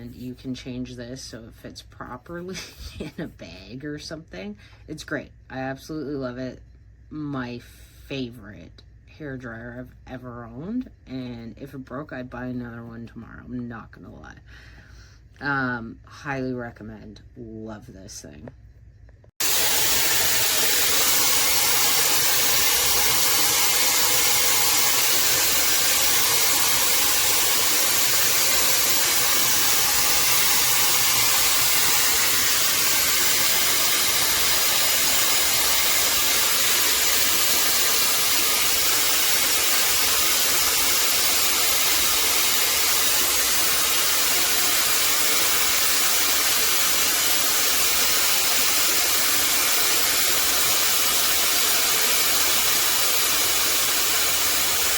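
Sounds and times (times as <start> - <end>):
hair dryer running: 19.4 - 54.9.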